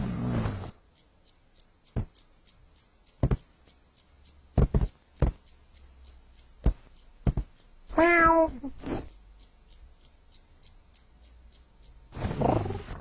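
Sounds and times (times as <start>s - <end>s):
soft thumps and knocks: 3.2s - 3.5s, 4.6s - 5.4s, 6.6s - 7.5s.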